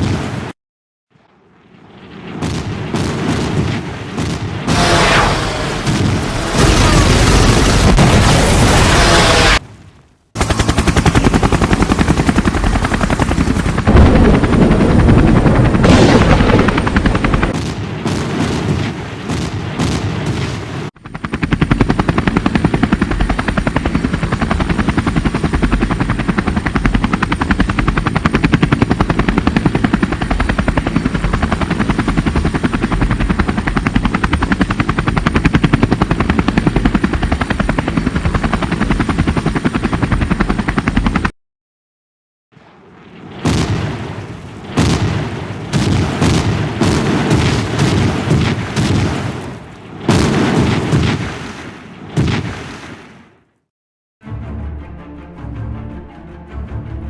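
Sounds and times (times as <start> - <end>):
helicopter rotor chop: 2.1 - 9.6, 10.4 - 41.3
booms: 2.3 - 9.6, 13.9 - 20.7
gunfire: 2.4 - 9.6, 13.9 - 20.7, 43.4 - 53.2.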